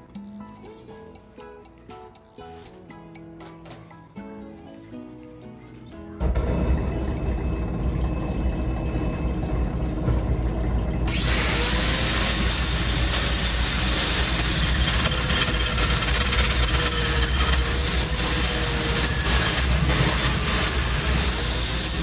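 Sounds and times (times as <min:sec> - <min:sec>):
drill press motor running: 0:06.2 - 0:22.0
flap disc grinding metal: 0:08.5 - 0:22.0.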